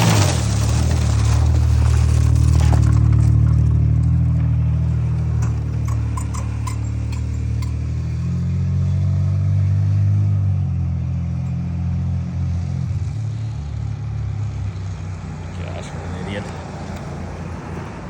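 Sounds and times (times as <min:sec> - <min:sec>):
car engine running: 0:00.0 - 0:11.5.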